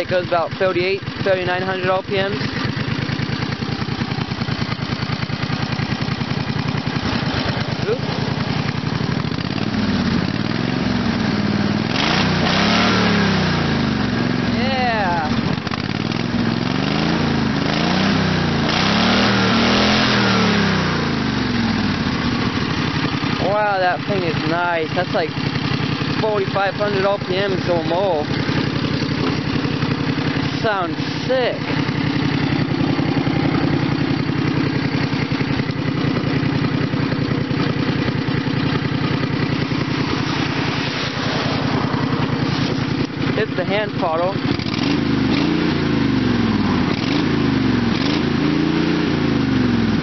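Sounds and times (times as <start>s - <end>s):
small engine running fast: 0.0s - 50.0s.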